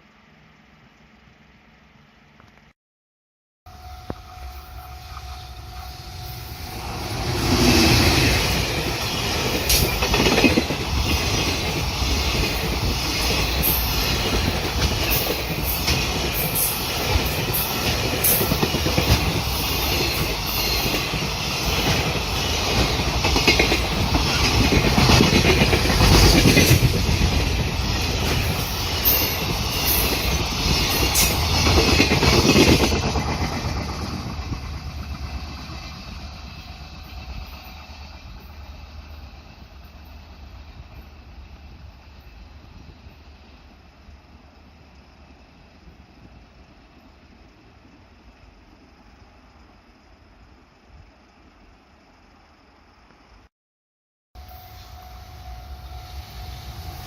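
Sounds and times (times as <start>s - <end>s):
train wheels clattering: 6.9s - 36.2s.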